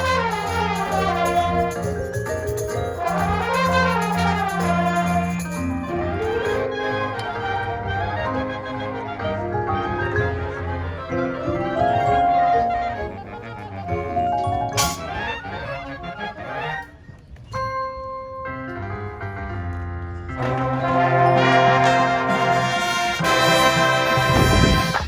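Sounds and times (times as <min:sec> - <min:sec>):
mallet percussion: 0:00.0 - 0:07.4, 0:09.4 - 0:13.3, 0:13.9 - 0:15.4, 0:17.5 - 0:18.7
brass band playing: 0:00.0 - 0:17.0, 0:20.3 - 0:25.0.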